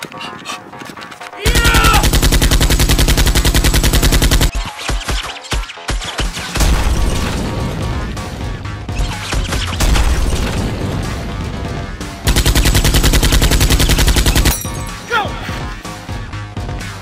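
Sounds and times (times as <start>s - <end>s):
action background music: 0.0s - 17.0s
machine-gun fire: 1.5s - 5.2s, 12.3s - 14.5s.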